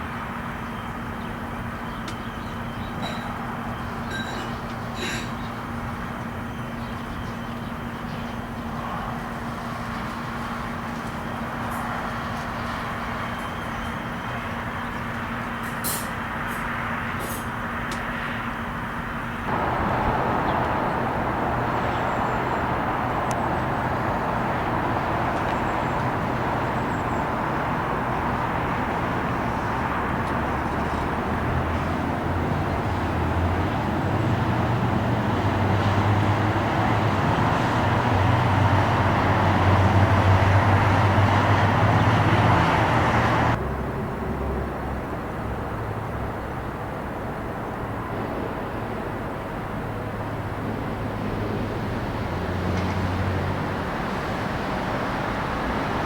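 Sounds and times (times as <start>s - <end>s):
engine roar: 8.6s - 56.0s.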